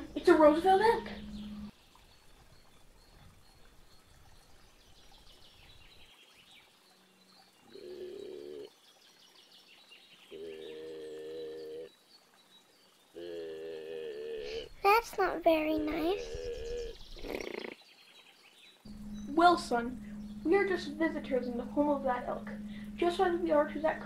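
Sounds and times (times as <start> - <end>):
low drawn-out bird calls: 0.0 - 1.7, 7.6 - 8.7, 10.2 - 11.9, 13.1 - 14.8, 15.8 - 17.8, 18.9 - 24.0
faint birdsong chirping: 0.0 - 24.0.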